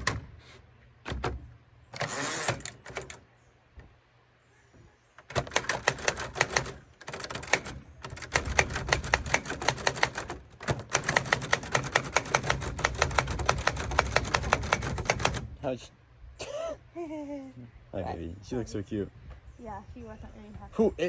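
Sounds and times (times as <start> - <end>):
typewriter keys clicking: 5.2 - 15.5.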